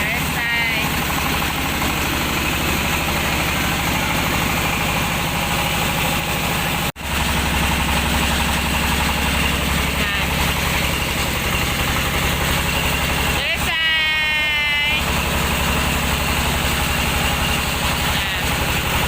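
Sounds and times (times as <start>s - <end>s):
milling machine engine running: 0.0s - 19.0s.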